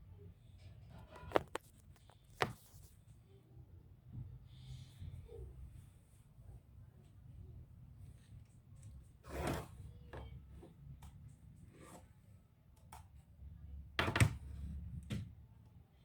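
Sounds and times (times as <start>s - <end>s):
clicks and knocks of laptop parts: 1.1s - 2.6s.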